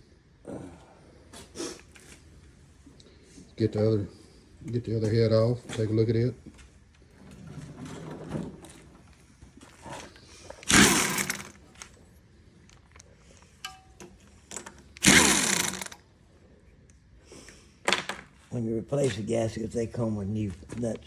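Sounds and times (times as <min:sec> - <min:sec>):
power tool motor whirring: 0:10.6 - 0:11.6, 0:15.0 - 0:16.0.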